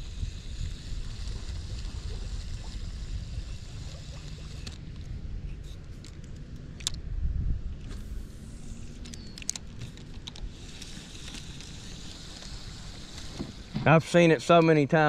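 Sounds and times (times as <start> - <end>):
wind buffeting microphone: 6.8 - 13.7
sharp clicks: 8.9 - 11.7.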